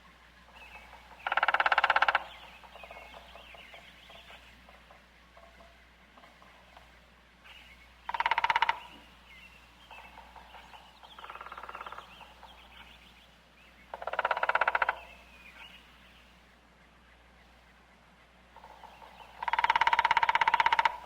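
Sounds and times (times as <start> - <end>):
woodpecker drumming on wood: 0.4 - 7.0, 8.0 - 9.2, 9.8 - 12.8, 13.9 - 15.2, 18.5 - 21.0.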